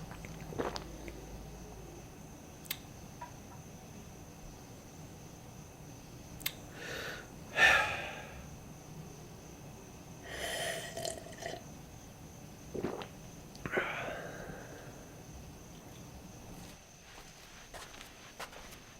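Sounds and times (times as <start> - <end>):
breathy hissy bursts: 10.2 - 11.6.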